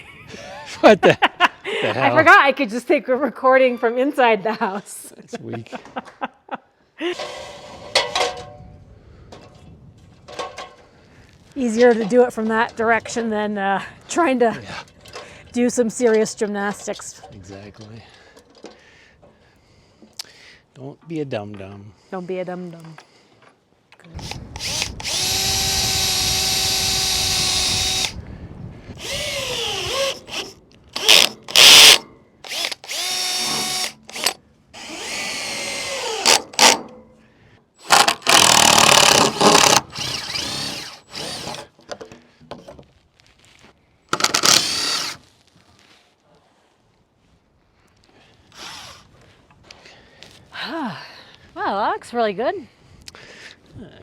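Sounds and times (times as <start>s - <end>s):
power drill bursts: 24.2s - 28.2s, 29.0s - 36.8s, 37.8s - 41.6s, 44.2s - 45.2s, 48.6s - 49.1s.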